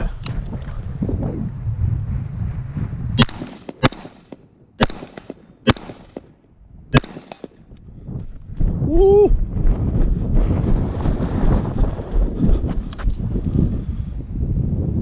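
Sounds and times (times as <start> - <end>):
wind buffeting microphone: 0.0 - 15.0
rifle shots: 3.2 - 7.6.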